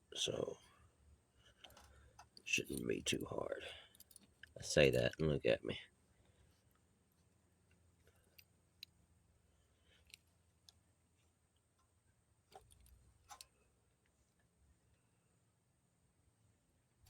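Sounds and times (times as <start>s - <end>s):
faint small clicks and taps: 10.0s - 14.5s.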